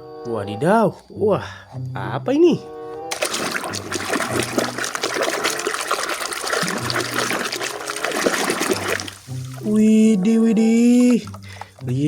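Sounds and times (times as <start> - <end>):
water splashing and trickling: 3.1 - 11.9.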